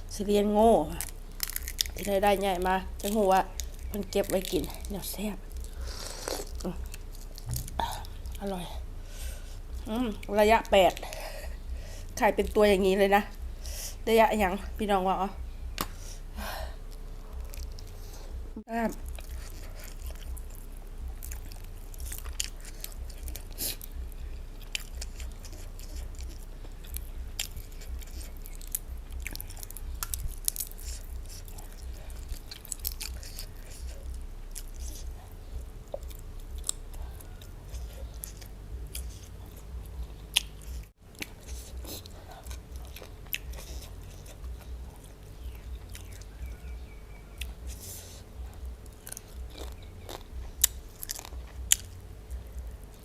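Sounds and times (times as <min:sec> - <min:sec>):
chewing crunchy food: 0:00.8 - 0:13.8, 0:16.9 - 0:18.4, 0:19.0 - 0:53.0
wet mouth clicks: 0:05.9 - 0:07.9.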